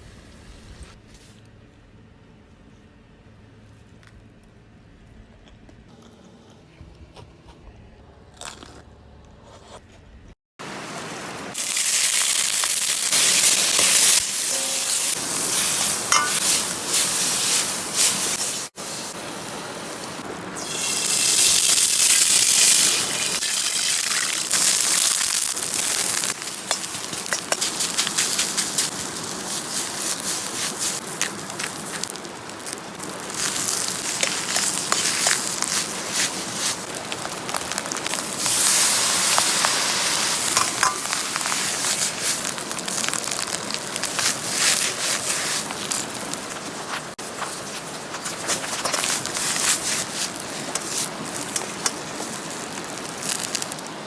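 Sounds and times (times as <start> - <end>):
food sizzling in hot oil: 10.6 - 54.0
handling sounds: 25.8 - 54.0.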